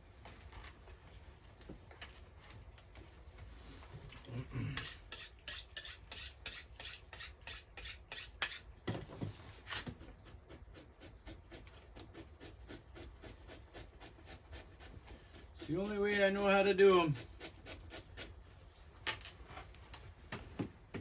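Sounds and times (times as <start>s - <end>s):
knife blade scraping pelt: 4.8s - 8.7s.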